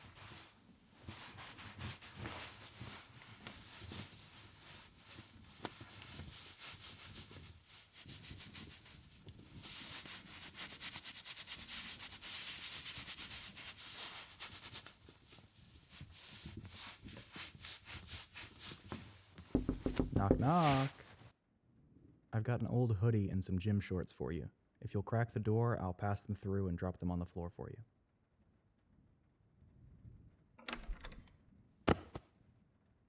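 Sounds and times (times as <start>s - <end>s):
cloth rustling and rubbing: 0.0s - 21.3s.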